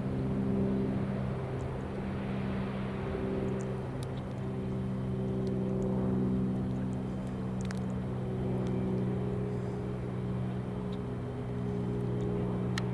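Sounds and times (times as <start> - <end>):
low engine hum: 0.0 - 12.9.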